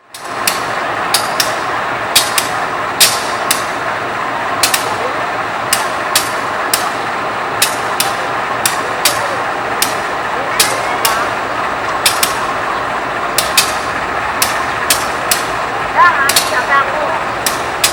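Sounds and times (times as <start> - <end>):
diesel locomotive idling: 0.0 - 17.9
sharp clicks: 4.6 - 5.0, 11.8 - 12.5, 13.4 - 15.5, 16.3 - 16.6.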